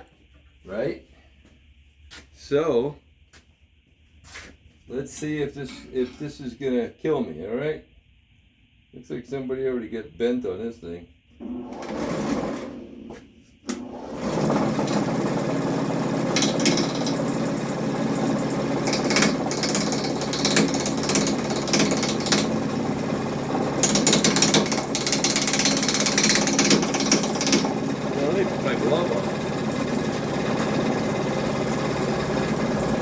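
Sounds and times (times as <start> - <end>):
lathe motor humming: 11.4 - 33.0.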